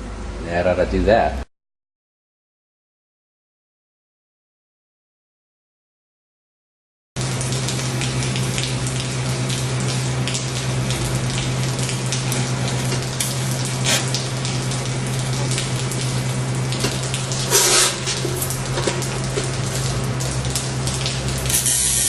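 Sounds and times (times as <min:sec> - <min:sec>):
low electrical hum: 0:00.0 - 0:01.5, 0:07.2 - 0:22.0
arc welding crackle: 0:07.2 - 0:22.0.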